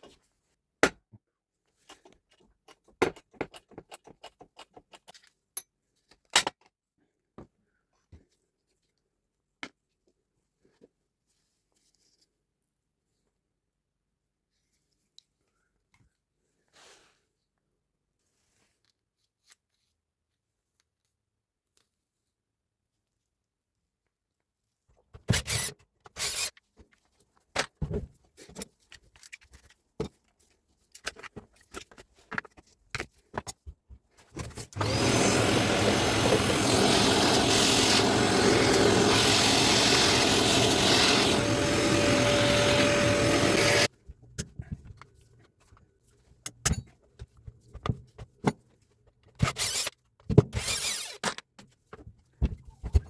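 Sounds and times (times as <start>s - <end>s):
tools and parts clicking and knocking: 1.8s - 6.8s, 27.6s - 30.3s, 46.4s - 52.1s
loud steady mechanical noise: 34.8s - 43.9s.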